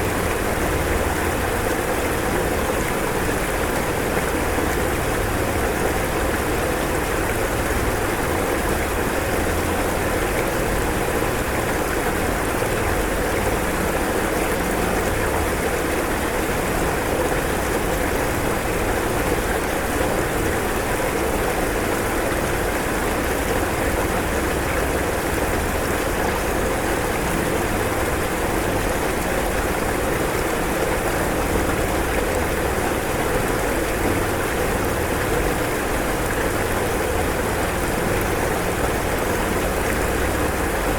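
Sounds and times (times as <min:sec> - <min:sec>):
floodwater rushing: 0:00.0 - 0:40.9.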